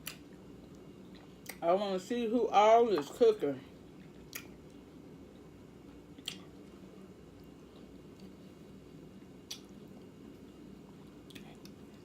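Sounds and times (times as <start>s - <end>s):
low room hum: 0.0s - 12.0s
chewing food: 5.9s - 8.5s, 9.4s - 12.0s.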